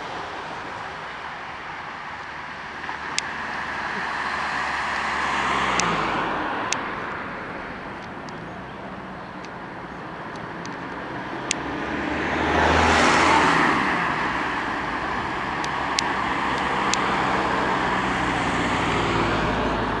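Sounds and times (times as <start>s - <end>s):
traffic noise: 0.0s - 20.0s
vehicle passing close by: 0.0s - 20.0s
sharp clicks: 5.6s - 11.7s, 15.0s - 17.2s.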